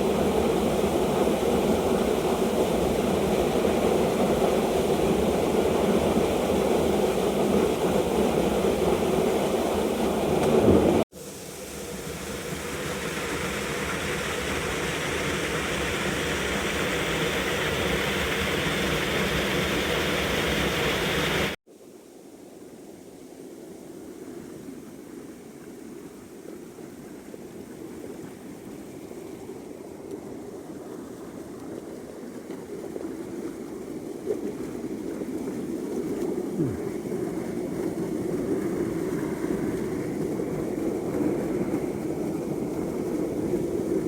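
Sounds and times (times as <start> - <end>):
stream water rushing: 12.9 - 21.6.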